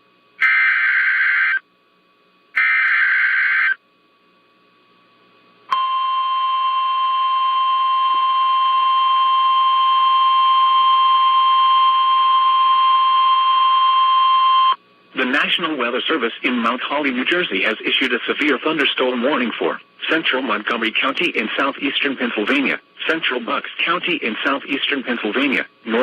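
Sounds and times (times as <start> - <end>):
screeching digital data bursts: 0.4 - 1.6, 2.6 - 3.8
steady warning alarm tone: 0.4 - 1.6, 2.6 - 3.8, 5.8 - 14.8.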